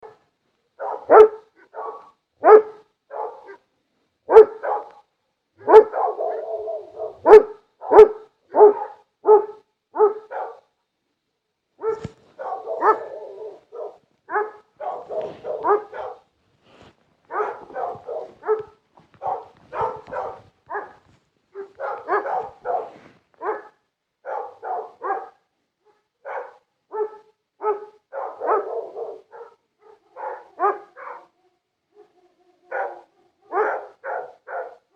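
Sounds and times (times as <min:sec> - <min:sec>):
dogs barking: 0:00.8 - 0:03.7, 0:04.3 - 0:10.7, 0:11.8 - 0:16.3, 0:17.3 - 0:34.9.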